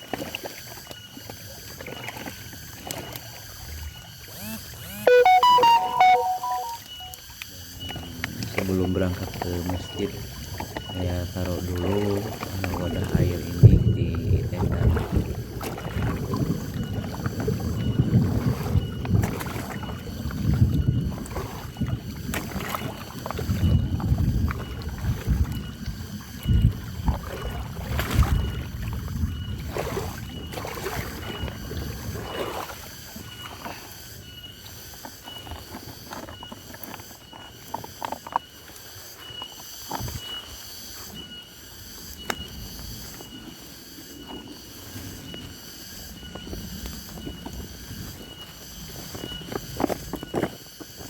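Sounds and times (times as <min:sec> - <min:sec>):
high chirping: 0:05.0 - 0:07.2.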